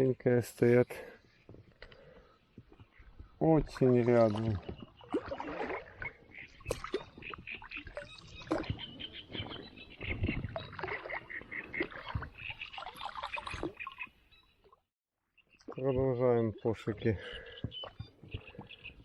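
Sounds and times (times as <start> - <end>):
water sloshing: 2.8 - 14.0
knocks and clicks on boat: 8.4 - 12.6.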